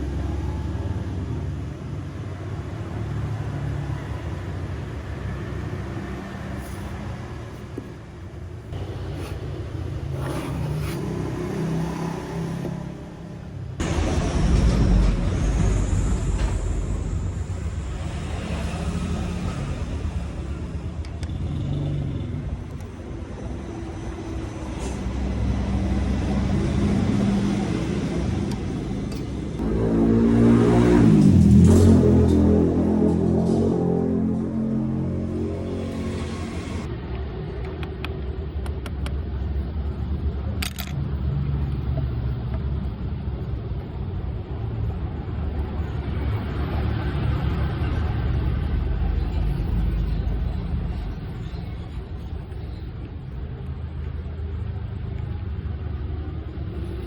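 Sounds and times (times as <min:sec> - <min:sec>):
steady low rumble: 0:13.2 - 0:21.2, 0:22.4 - 0:57.0.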